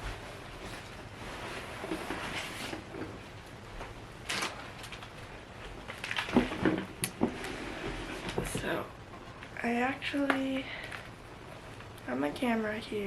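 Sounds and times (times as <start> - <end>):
knocks and clatter of objects: 6.0 - 8.7.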